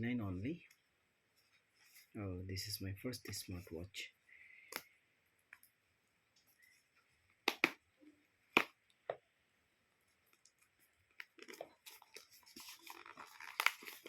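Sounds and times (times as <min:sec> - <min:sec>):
packaging rustling: 0:11.2 - 0:14.0.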